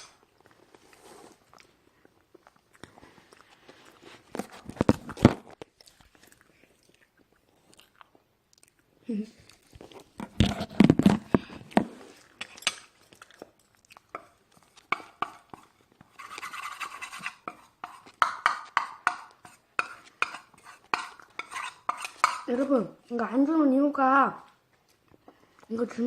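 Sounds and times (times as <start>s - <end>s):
cutlery clinking on a plate: 12.4s - 14.3s, 14.9s - 22.5s.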